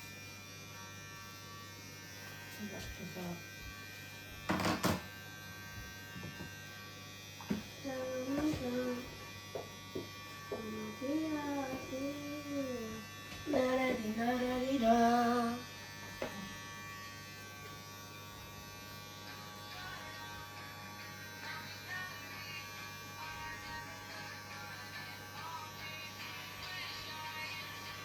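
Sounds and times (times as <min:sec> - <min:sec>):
electric hair clippers buzzing: 0:00.0 - 0:28.0
person singing wordless tune: 0:13.5 - 0:15.7, 0:21.4 - 0:28.0.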